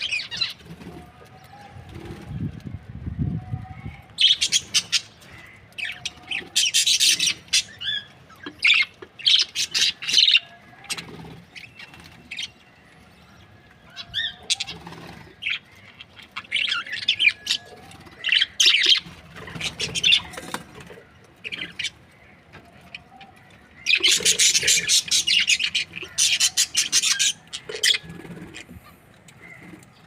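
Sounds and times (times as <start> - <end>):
budgerigars chirping: 23.9 - 28.8.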